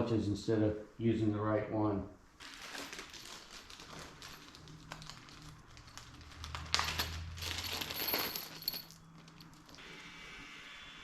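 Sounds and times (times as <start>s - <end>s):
small metal parts clinking: 2.9s - 9.8s
rattling and scraping: 3.9s - 9.8s.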